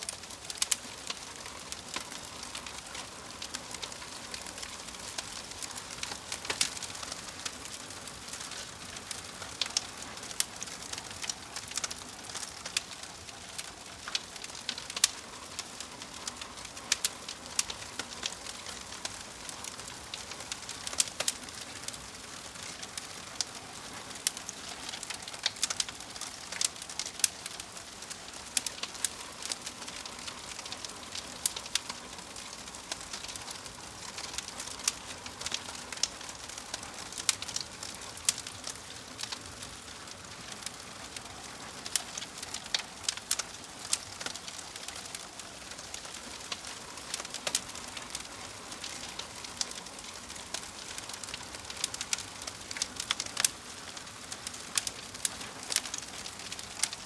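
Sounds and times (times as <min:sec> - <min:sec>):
wood crackling and popping: 0:00.0 - 0:57.0
fire hissing: 0:00.1 - 0:39.9.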